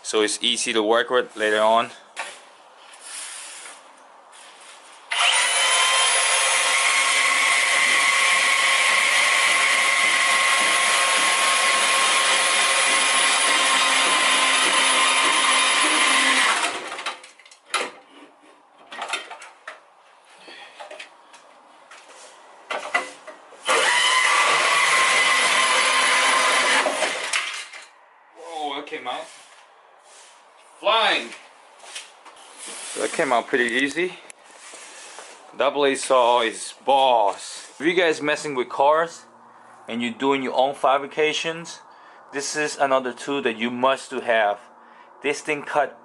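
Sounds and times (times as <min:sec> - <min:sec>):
band saw cutting metal: 0:05.1 - 0:17.0, 0:23.6 - 0:27.8
knocks and clatters: 0:16.7 - 0:19.8.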